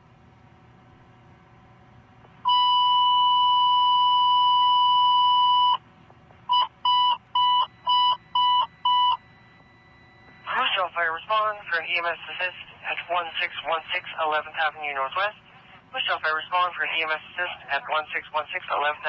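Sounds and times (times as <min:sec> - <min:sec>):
short beeps: 0:02.5 - 0:05.8, 0:06.5 - 0:10.6
steady high beep: 0:02.5 - 0:05.8, 0:06.5 - 0:10.7.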